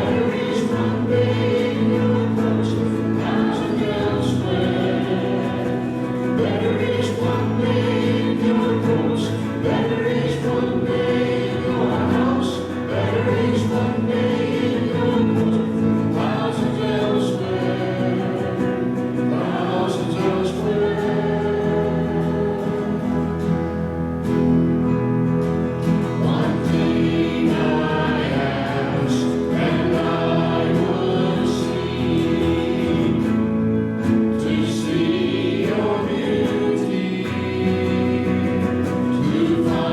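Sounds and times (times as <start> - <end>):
group singing a hymn: 0.0 - 39.9.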